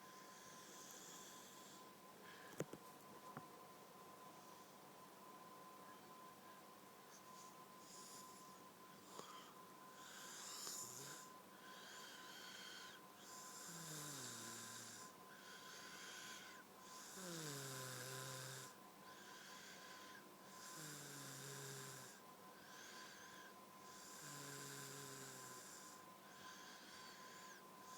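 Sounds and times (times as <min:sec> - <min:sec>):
whistling tone in snore: 0:00.0 - 0:01.9, 0:07.1 - 0:27.9
woman snoring: 0:09.1 - 0:27.9.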